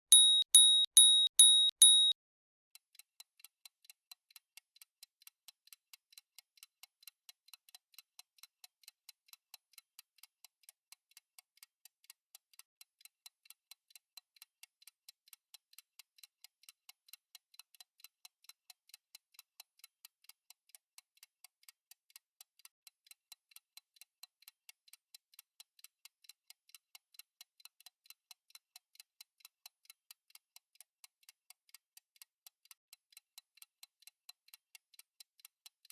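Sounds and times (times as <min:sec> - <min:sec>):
clock ticking: 0:00.1 - 0:02.2.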